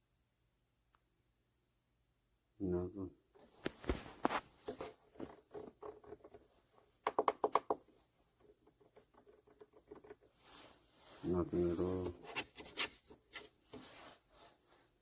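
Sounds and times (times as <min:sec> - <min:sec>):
hands rustling: 0:03.4 - 0:07.0.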